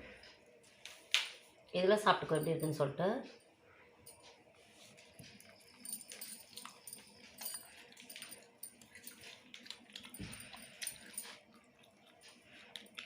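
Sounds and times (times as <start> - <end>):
soft chewing: 4.2 - 13.0.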